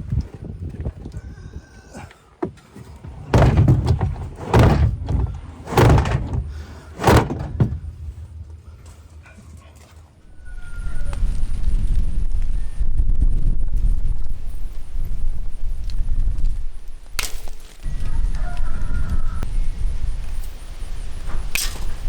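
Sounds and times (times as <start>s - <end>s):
heavy thuds: 2.4s - 10.2s
low rumble: 3.0s - 12.0s.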